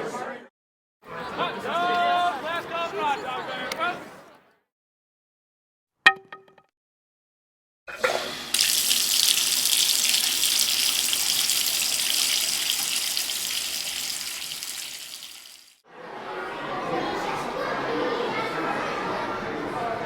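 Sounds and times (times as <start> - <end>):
tap water running into sink: 8.0 - 15.8.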